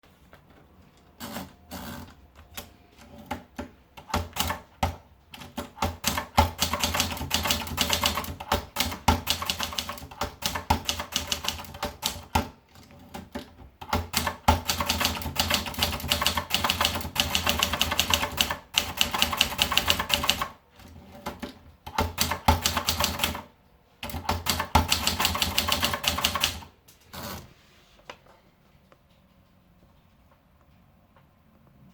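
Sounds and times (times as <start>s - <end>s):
typewriter keys clacking: 13.2s - 20.5s, 24.0s - 27.4s.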